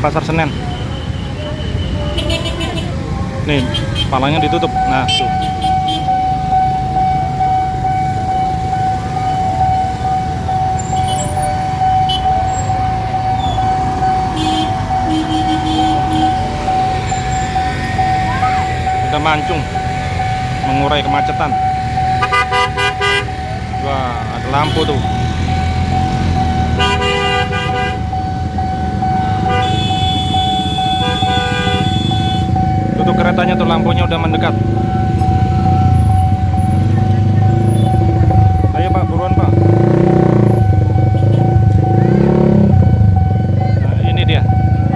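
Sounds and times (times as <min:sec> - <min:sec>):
low rumble of traffic: 0:00.0 - 0:44.9
car horn honks: 0:00.2 - 0:06.2, 0:10.8 - 0:12.7, 0:13.4 - 0:17.2, 0:22.2 - 0:23.5, 0:24.5 - 0:25.2, 0:26.6 - 0:28.2, 0:29.2 - 0:34.5, 0:41.0 - 0:42.8
level crossing alarm tone: 0:04.0 - 0:44.9
horn blasts: 0:10.8 - 0:43.4.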